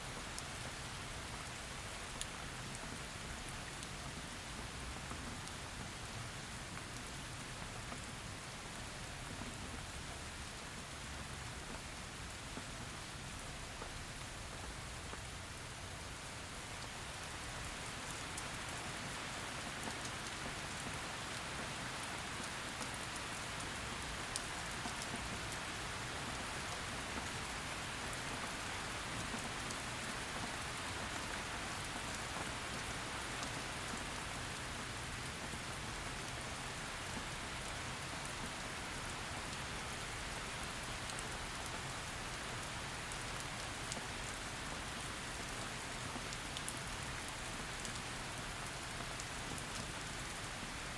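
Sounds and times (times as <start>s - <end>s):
heavy rain falling: 10.6s - 50.9s.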